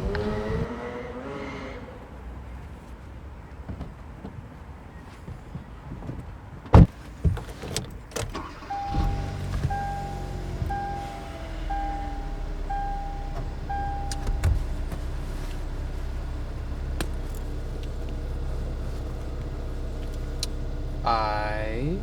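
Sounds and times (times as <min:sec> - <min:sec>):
car low hum: 0:00.0 - 0:02.6, 0:06.7 - 0:22.0
car warning chime beeping: 0:08.3 - 0:22.0.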